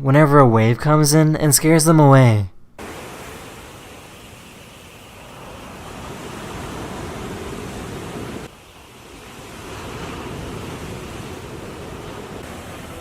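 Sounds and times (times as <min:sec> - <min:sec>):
ocean surf washing up beach: 0:02.8 - 0:13.0
wind buffeting microphone: 0:03.2 - 0:13.0.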